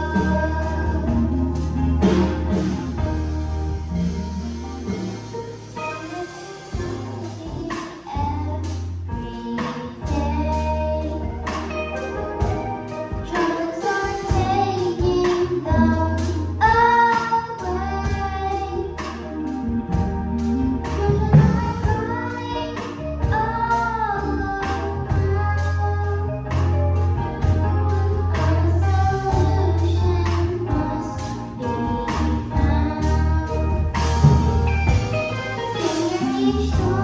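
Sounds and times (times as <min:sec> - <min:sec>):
bass notes: 0:00.0 - 0:37.0
regular drum beat: 0:00.0 - 0:37.0.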